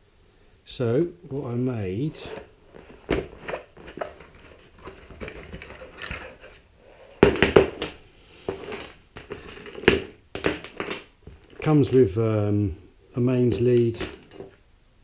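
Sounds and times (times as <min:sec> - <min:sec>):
rustling: 0:02.0 - 0:12.2.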